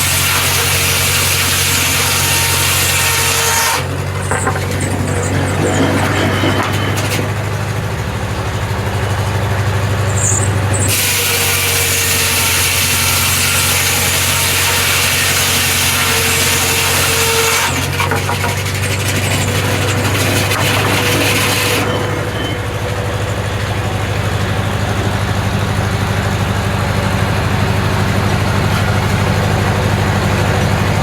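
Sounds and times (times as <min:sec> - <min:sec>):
saw blade cutting log: 0:00.0 - 0:07.7, 0:10.0 - 0:24.3
sawmill engine hum: 0:00.0 - 0:31.0.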